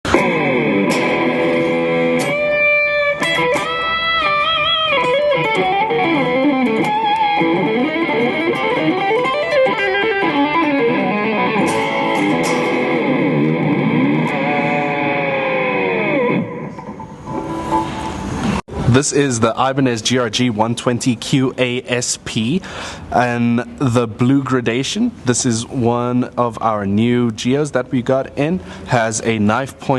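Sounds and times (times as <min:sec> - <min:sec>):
electric guitar bends and dive bombs: 0:00.0 - 0:18.9.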